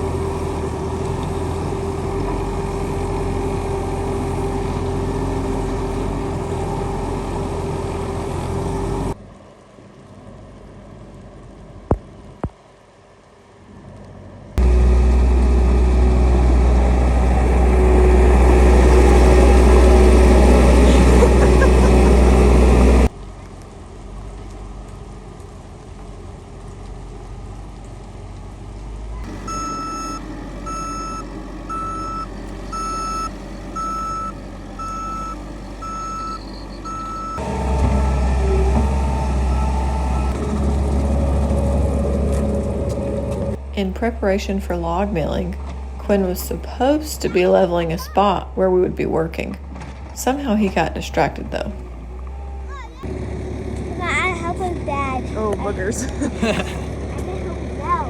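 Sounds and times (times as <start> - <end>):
skid steer engine running: 0.0 - 9.4, 13.9 - 58.0
backup alarm beeping: 29.2 - 40.4.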